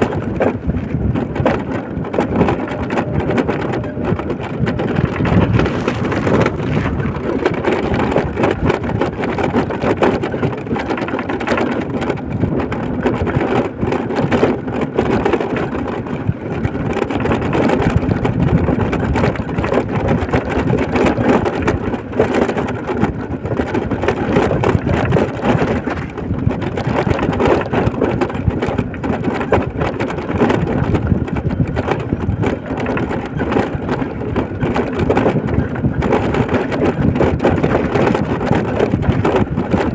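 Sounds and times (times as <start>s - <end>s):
vehicle engine: 0.0s - 12.2s
tyre road noise: 0.0s - 39.9s.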